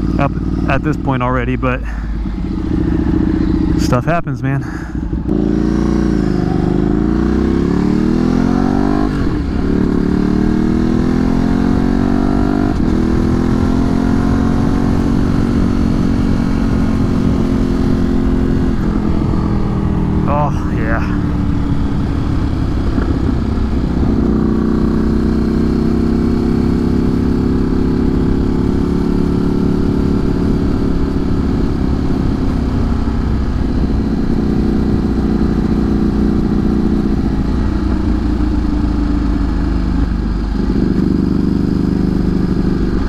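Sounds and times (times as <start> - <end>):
motorcycle engine idling: 0.0 - 7.0, 30.2 - 43.0.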